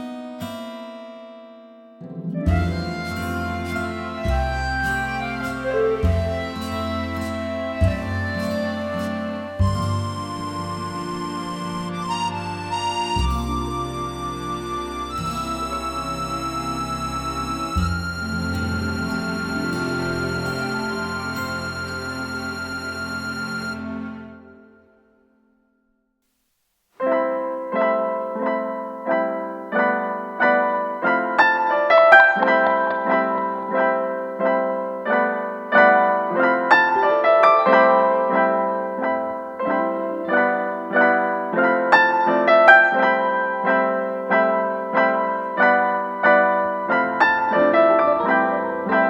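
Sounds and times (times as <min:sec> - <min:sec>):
higher piano melody: 0:02.0 - 0:24.8, 0:27.0 - 0:49.0
piano chords: 0:02.0 - 0:25.0, 0:27.0 - 0:49.0.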